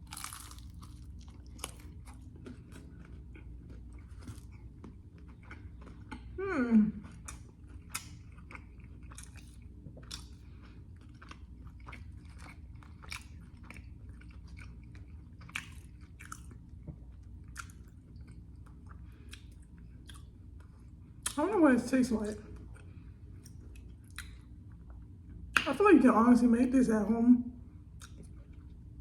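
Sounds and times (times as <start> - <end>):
person chewing crunchy food: 0.0 - 6.4, 7.0 - 21.4, 27.8 - 29.0
faint low hum: 0.0 - 29.0.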